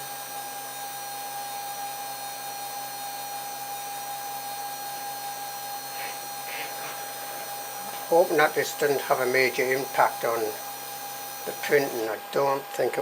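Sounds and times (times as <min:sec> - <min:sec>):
printer whine: 0:00.0 - 0:13.0
fan-like hiss: 0:05.8 - 0:12.6.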